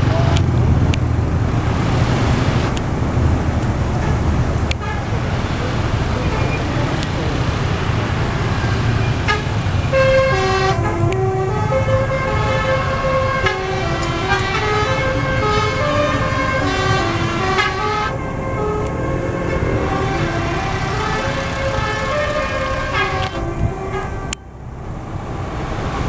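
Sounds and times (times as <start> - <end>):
low engine rumble: 0.0 - 26.0
multi-tone bus horn melody: 0.0 - 26.0.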